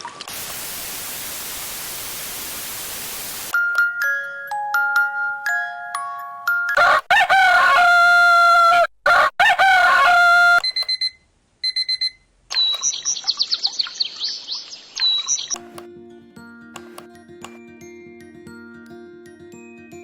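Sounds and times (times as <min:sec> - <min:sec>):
recorded rooster crowing: 0:06.8 - 0:10.7
rapid high bird chirps: 0:12.5 - 0:15.7.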